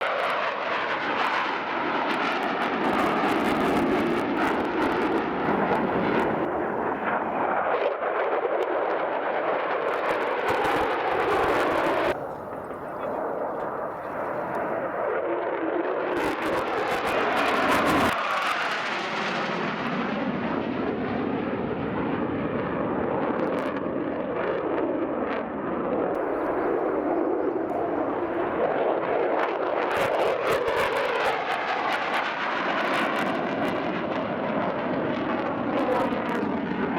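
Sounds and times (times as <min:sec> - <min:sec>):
jet engine roaring in flight: 0:00.0 - 0:36.9
faint cracks: 0:10.5 - 0:15.0.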